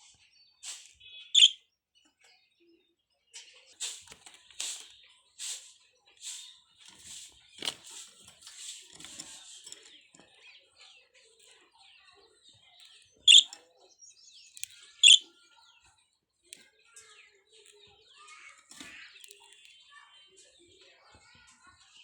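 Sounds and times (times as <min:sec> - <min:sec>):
loud sharp bird calls: 0:00.6 - 0:01.7, 0:13.2 - 0:13.6, 0:14.4 - 0:15.3
budgerigars chattering: 0:01.1 - 0:01.6, 0:12.9 - 0:13.6, 0:14.5 - 0:15.3.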